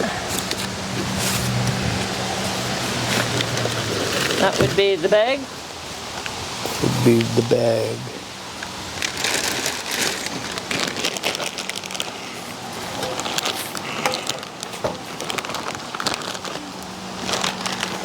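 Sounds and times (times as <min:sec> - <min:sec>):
packaging rustling and crinkling: 0:02.4 - 0:04.9, 0:08.8 - 0:18.0.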